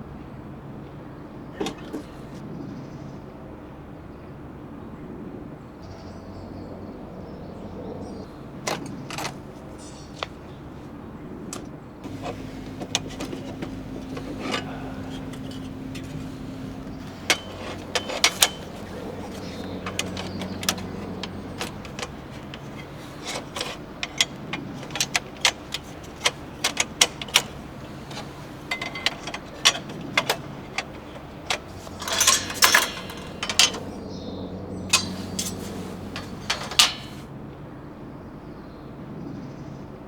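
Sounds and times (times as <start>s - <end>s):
objects clicking and clinking: 1.6s - 2.2s, 11.5s - 34.0s, 34.9s - 37.3s
steady low hum: 12.0s - 34.1s.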